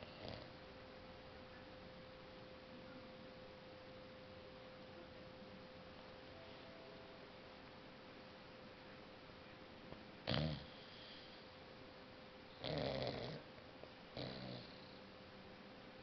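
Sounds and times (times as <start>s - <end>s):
puppy snoring: 0.0s - 0.6s, 10.2s - 11.5s, 12.5s - 13.5s, 14.1s - 15.0s.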